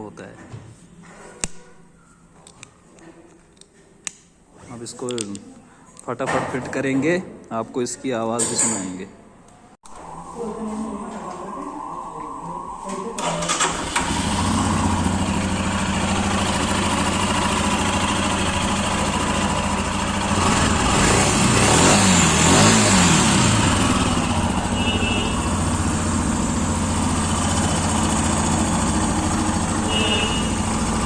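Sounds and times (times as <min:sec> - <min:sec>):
engine revving: 0:13.2 - 0:31.0
motorcycle engine idling: 0:13.6 - 0:31.0.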